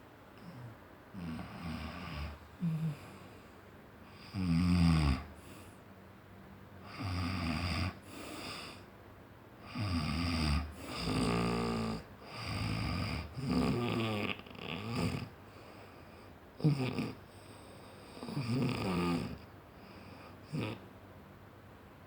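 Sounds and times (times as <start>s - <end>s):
heavy snoring: 0.4s - 3.4s, 4.1s - 5.8s, 6.8s - 8.8s, 9.6s - 15.8s, 16.6s - 20.8s.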